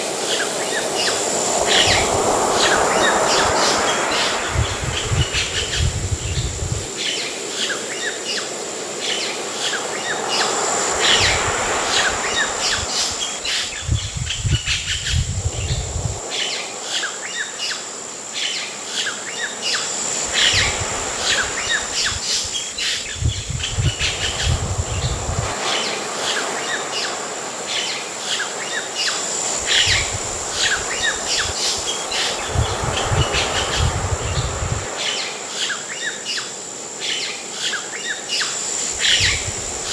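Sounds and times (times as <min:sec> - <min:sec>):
ocean waves with deep rumble: 0:00.0 - 0:37.2, 0:37.9 - 0:39.9
high insect drone: 0:00.0 - 0:39.9
birds chirping and singing: 0:00.3 - 0:07.3, 0:11.1 - 0:16.6, 0:20.3 - 0:25.5, 0:29.6 - 0:35.2, 0:38.9 - 0:39.9.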